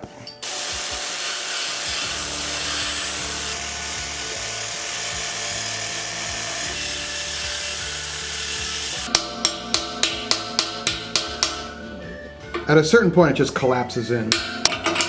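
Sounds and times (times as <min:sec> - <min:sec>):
power tool cutting metal: 0:00.4 - 0:11.7.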